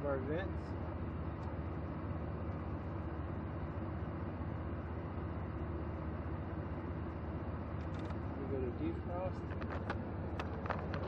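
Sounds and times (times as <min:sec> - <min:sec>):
car engine idling: 0:00.0 - 0:11.0.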